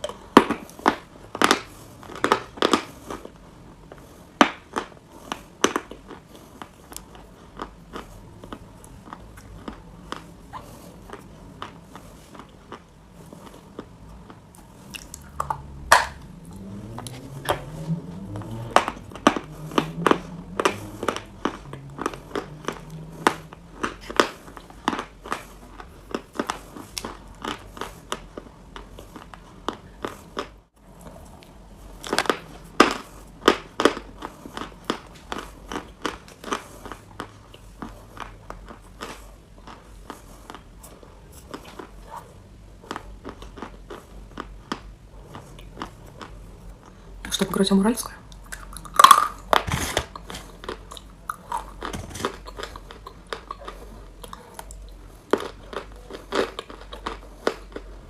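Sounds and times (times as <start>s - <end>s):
chewing crunchy chalk: 0.0s - 47.6s, 48.2s - 58.0s.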